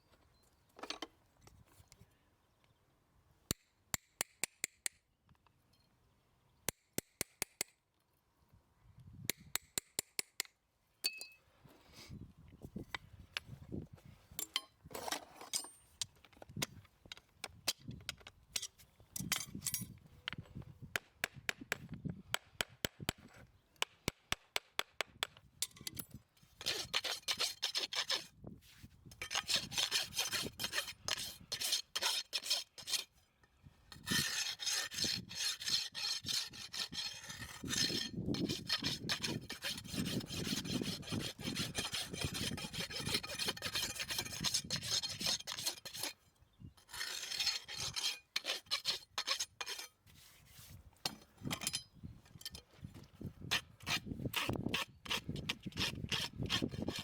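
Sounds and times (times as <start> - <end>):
rasp filing hoof: 26.6 - 28.3, 29.2 - 33.2, 34.0 - 46.2, 46.8 - 50.4, 53.5 - 57.0.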